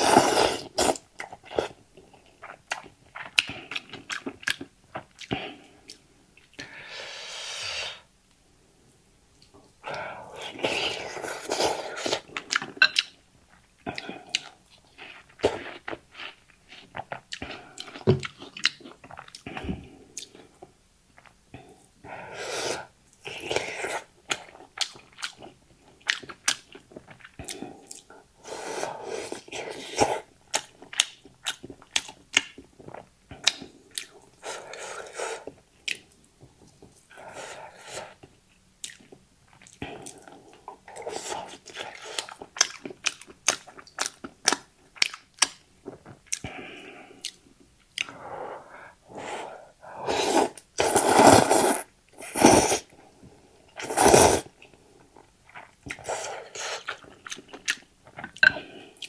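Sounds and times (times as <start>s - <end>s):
slurping noodles: 0.0s - 1.8s, 6.6s - 8.1s, 10.2s - 12.8s, 22.1s - 24.6s, 28.4s - 30.3s, 34.4s - 35.6s, 39.8s - 42.4s, 48.0s - 53.0s, 53.8s - 54.6s, 55.5s - 57.2s
wet chewing with mouth clicks: 0.0s - 6.7s, 9.4s - 21.7s, 23.1s - 28.3s, 28.9s - 59.0s.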